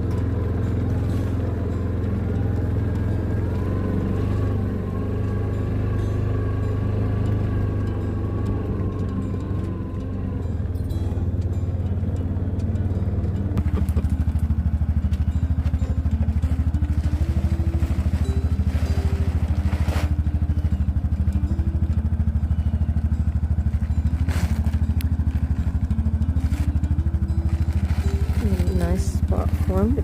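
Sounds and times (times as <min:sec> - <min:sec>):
vehicle engine running: 0:00.0 - 0:30.0.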